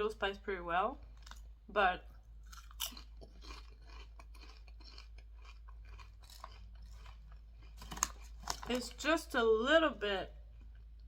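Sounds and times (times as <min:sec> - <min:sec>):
chewing crunchy chips: 0:01.0 - 0:09.0.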